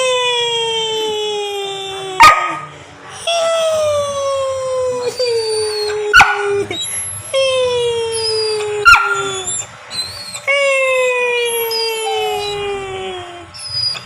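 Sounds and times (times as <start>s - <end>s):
dog yipping: 2.2s - 2.7s, 5.6s - 7.1s, 8.2s - 10.6s, 11.4s - 12.8s, 13.5s - 14.0s
dog howling: 4.8s - 14.0s.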